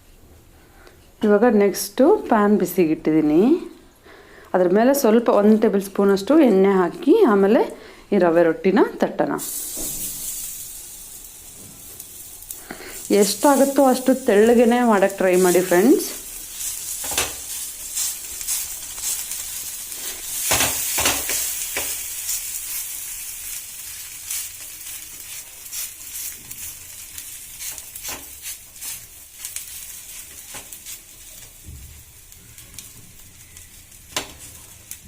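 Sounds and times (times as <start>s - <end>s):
oil sizzling in a hot pan: 9.3s - 35.0s.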